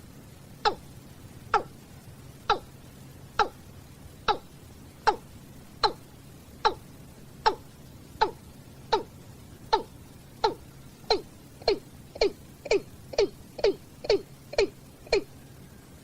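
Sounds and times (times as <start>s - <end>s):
bird calling with downward notes: 0.6s - 0.9s, 1.5s - 1.8s, 2.5s - 2.7s, 3.4s - 3.6s, 4.3s - 6.0s, 6.6s - 16.0s.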